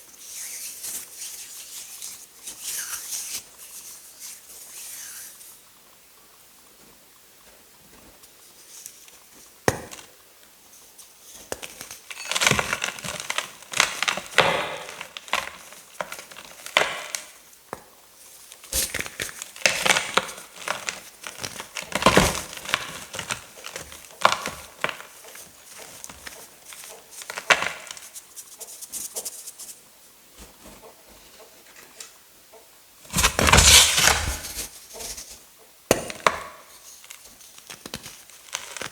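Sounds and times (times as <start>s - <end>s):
chalk blocks crunching: 18.7s - 29.7s, 33.1s - 35.4s, 36.8s - 38.9s.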